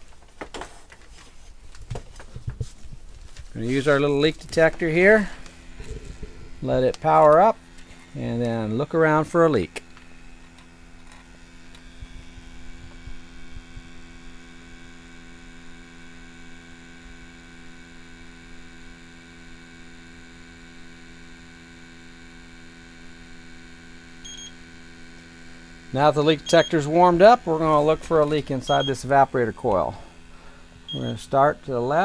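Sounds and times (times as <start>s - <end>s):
electrical hum: 0.0s - 32.0s
short electronic beep: 30.9s - 31.2s.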